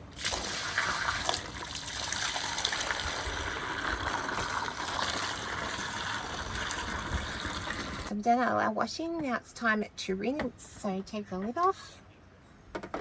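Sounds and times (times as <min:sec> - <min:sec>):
water gushing from drain outlet: 0:00.0 - 0:08.1.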